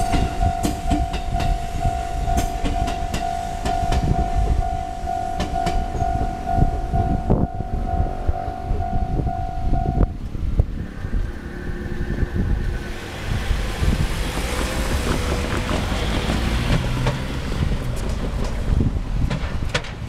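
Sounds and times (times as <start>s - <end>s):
level-crossing warning bell: 0.0s - 16.5s
vehicle passing: 3.4s - 19.2s.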